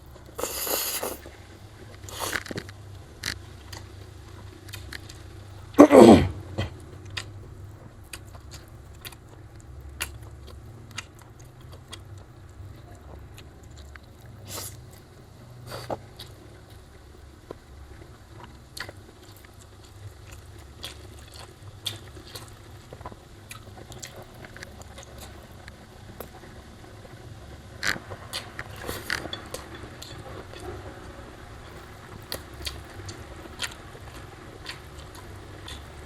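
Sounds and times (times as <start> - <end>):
chewing food: 0.0 - 36.0
faint low hum: 0.0 - 36.0.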